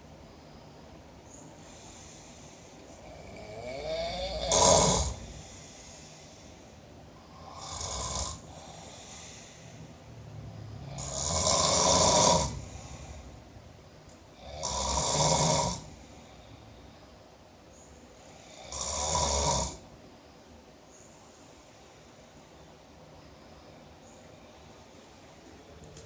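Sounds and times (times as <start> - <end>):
quiet breathing: 0.0 - 26.0
person snoring: 1.7 - 6.6, 7.2 - 9.9, 10.7 - 13.3, 14.4 - 16.0, 18.3 - 19.8.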